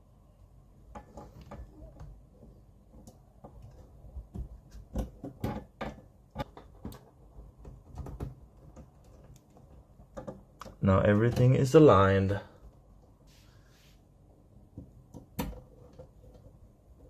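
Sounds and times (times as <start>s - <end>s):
clicks and knocks on computer case: 3.0s - 11.6s.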